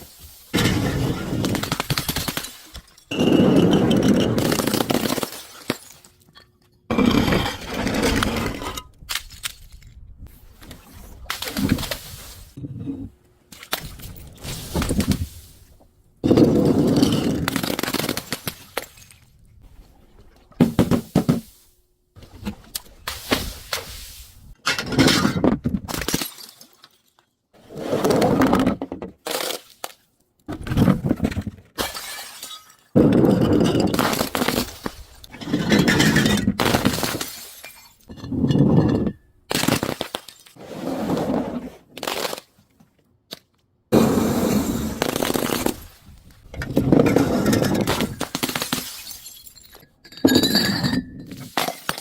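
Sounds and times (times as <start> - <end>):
glass bottles breaking: 0.6 - 6.2, 25.9 - 27.1, 31.8 - 40.6, 47.4 - 52.0.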